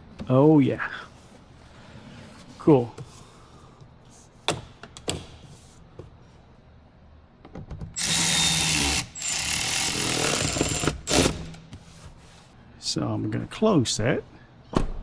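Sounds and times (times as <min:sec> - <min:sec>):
power tool motor running: 0:08.0 - 0:11.6.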